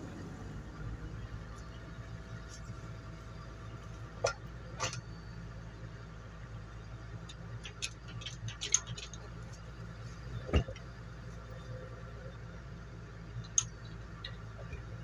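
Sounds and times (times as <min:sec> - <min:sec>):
engine humming: 0:00.0 - 0:15.0
metallic clicks and knocks: 0:07.3 - 0:09.6, 0:13.4 - 0:14.9.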